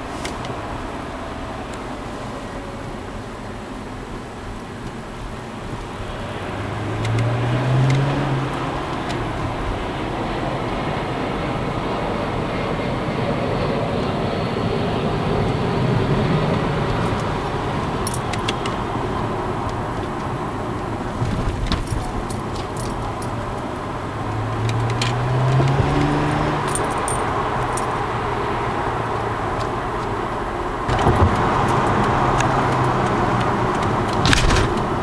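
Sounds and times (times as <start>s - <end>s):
car engine accelerating: 0.0s - 35.0s
road noise: 0.0s - 35.0s
light clicks and rattles: 19.6s - 23.9s, 24.6s - 28.0s.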